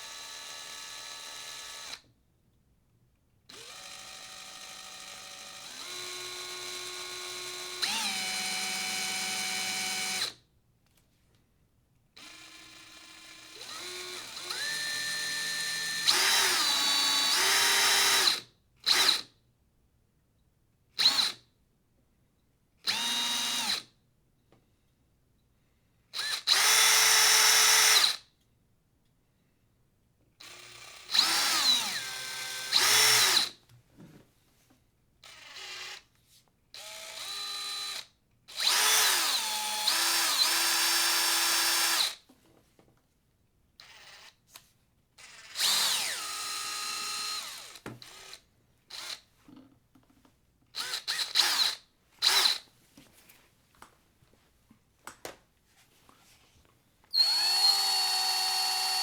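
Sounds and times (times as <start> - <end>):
power drill motor whining: 0.1 - 2.0, 3.5 - 10.4, 12.2 - 19.1, 22.9 - 23.8, 26.2 - 28.2, 30.4 - 33.5, 35.2 - 36.0, 36.8 - 42.2, 45.2 - 49.2, 50.8 - 52.6, 57.1 - 59.0.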